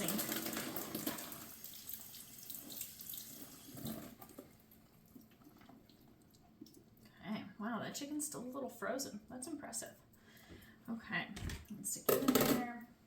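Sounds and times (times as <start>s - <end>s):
liquid splashing into sink: 0.0s - 4.5s.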